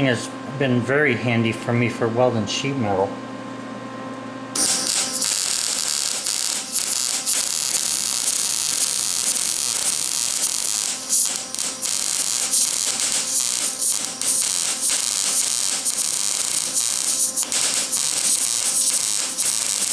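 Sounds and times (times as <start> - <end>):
welder arc crackling: 4.6 - 19.9.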